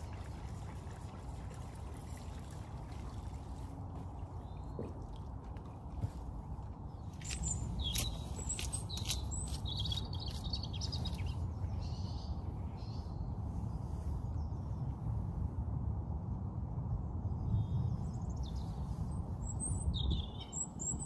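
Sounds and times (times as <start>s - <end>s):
wild birds chirping: 0.0s - 14.9s
steady low rumble: 0.0s - 21.0s.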